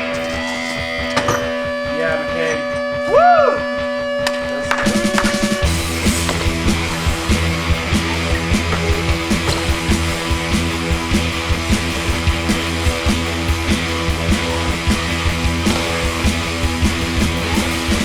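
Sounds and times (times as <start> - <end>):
distorted guitars: 0.0 - 18.0
punk rock music: 0.0 - 18.0
fast drum beat: 4.8 - 18.0.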